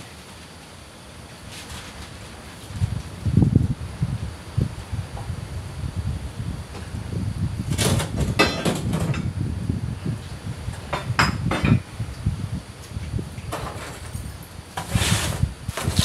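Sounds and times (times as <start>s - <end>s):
hard objects clattering: 7.8s - 9.3s.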